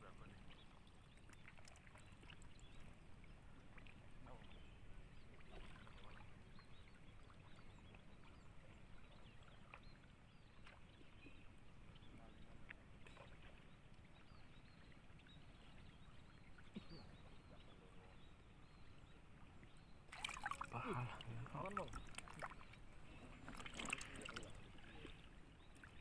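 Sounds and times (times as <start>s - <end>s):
water lapping and ticks: 0.0s - 26.0s.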